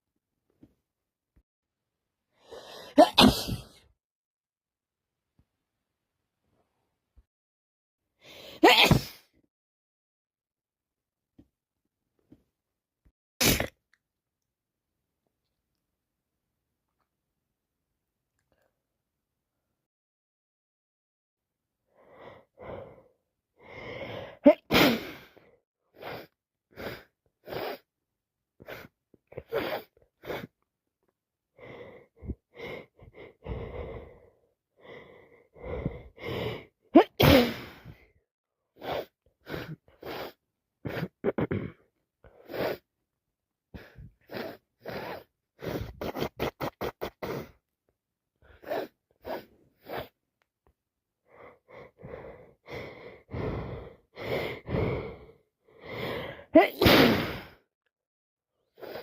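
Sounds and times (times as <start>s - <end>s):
person sneezing: 2.8s - 3.8s, 8.4s - 9.3s, 13.4s - 13.8s, 24.4s - 25.2s, 37.0s - 37.9s, 56.5s - 57.6s
gasping breaths: 31.6s - 36.8s, 51.2s - 56.6s.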